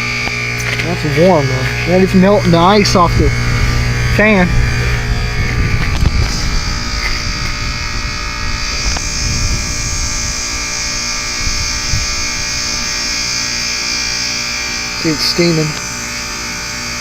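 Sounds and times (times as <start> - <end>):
heat pump humming with buzz: 0.0 - 17.0.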